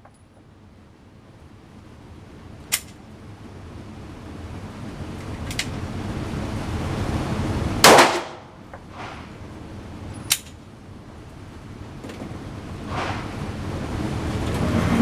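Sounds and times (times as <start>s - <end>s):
steady low rumble: 0.0s - 15.0s
gunshot with echo: 7.8s - 8.4s
sharp crack: 7.8s - 9.4s, 12.9s - 13.6s.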